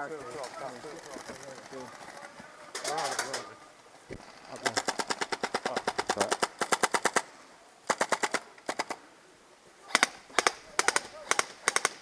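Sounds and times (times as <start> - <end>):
airsoft guns firing: 2.8 - 3.4, 4.6 - 7.3, 7.9 - 9.0, 9.9 - 12.0.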